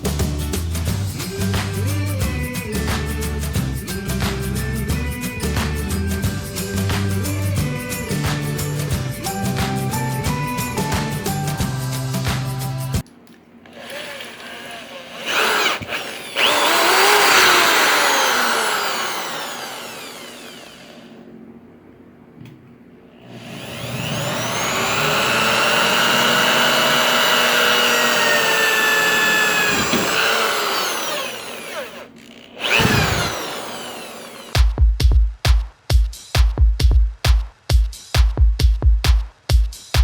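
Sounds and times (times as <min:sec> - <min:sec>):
power tool motor running: 0:13.7 - 0:21.3, 0:23.2 - 0:34.6.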